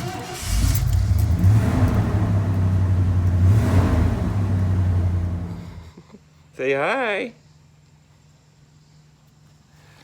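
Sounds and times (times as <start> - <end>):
pickup engine starting: 0.0 - 5.8
engine droning steadily: 0.0 - 6.1.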